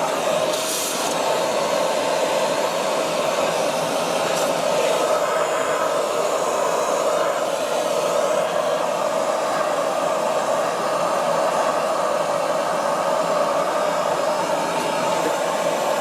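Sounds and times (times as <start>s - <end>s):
air hiss: 0.0s - 9.8s
vacuum cleaner running: 0.0s - 16.0s.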